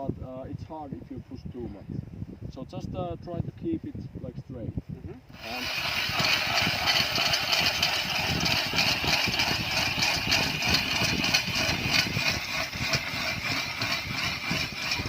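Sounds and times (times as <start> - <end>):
auger blades cutting ice: 5.4 - 15.0
ice auger motor running: 5.4 - 15.0.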